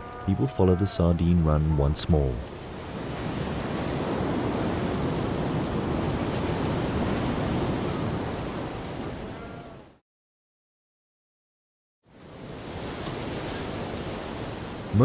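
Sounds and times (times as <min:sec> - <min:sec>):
ocean surf washing: 0:00.0 - 0:10.0, 0:12.1 - 0:15.0.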